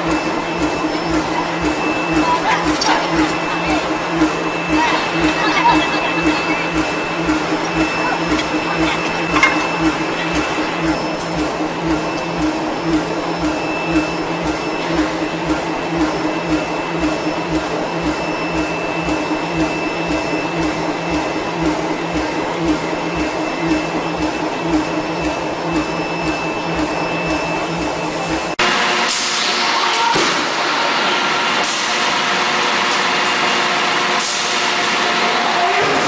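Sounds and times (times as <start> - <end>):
machinery motor hum pulsing: 0.0 - 28.6.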